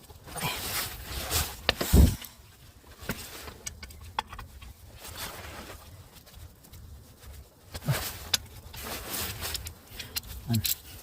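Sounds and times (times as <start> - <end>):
metal bolts clicking and tapping: 3.6 - 4.7.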